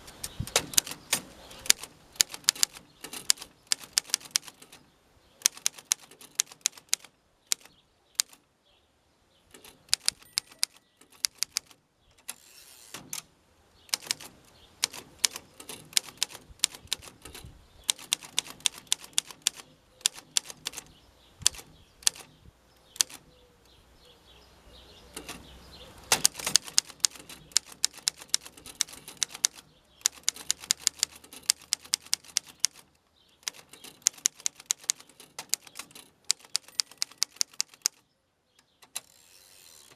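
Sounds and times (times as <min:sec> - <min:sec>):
manual typewriter typing: 0:00.0 - 0:08.4, 0:09.5 - 0:13.3, 0:13.9 - 0:22.4, 0:23.0 - 0:23.3, 0:25.1 - 0:25.5, 0:26.1 - 0:38.0.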